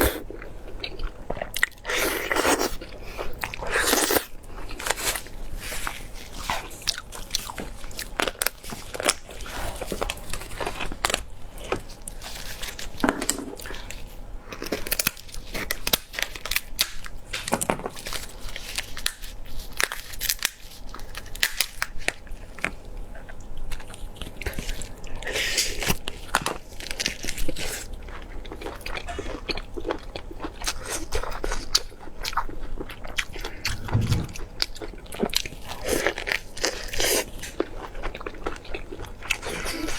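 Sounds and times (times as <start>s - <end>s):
person chewing with crunches: 0.0s - 5.3s.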